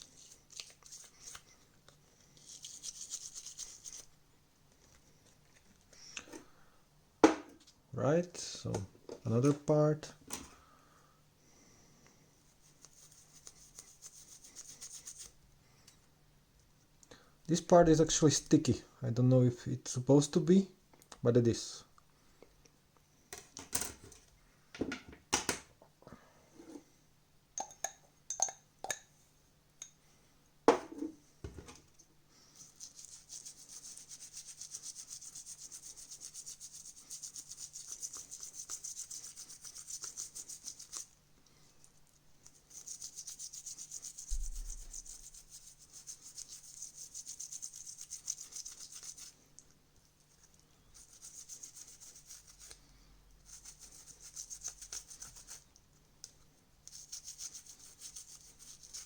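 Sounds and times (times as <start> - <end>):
scrubbing on plastic: 0.0 - 4.2, 32.6 - 41.2, 41.8 - 49.4.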